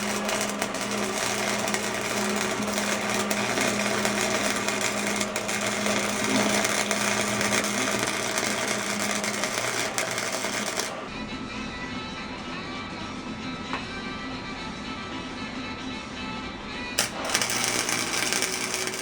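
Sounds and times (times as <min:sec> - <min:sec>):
harsh metalworking crackling: 0:00.0 - 0:11.1, 0:17.0 - 0:19.0.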